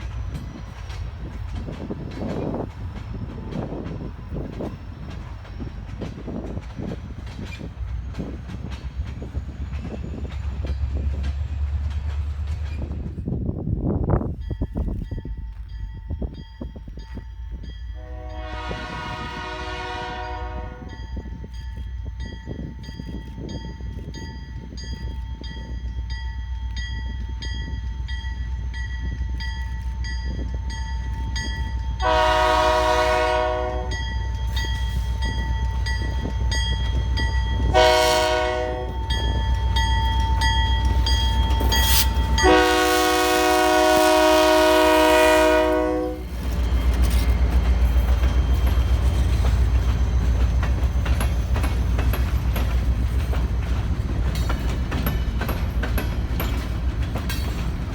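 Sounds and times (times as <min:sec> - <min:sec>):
locomotive rumble: 0:00.0 - 0:57.9
locomotive horn: 0:18.0 - 0:21.0, 0:32.0 - 0:34.1, 0:37.6 - 0:39.0, 0:41.8 - 0:46.4.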